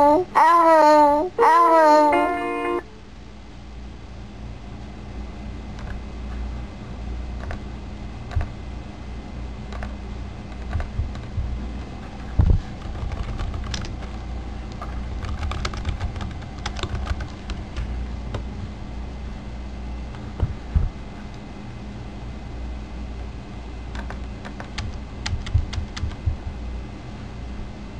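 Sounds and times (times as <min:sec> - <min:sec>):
low electrical hum: 0:00.0 - 0:27.9
keyboard typing: 0:10.5 - 0:11.3, 0:12.2 - 0:14.2, 0:14.8 - 0:17.6, 0:23.9 - 0:26.4
heavy thumps: 0:20.4 - 0:21.0.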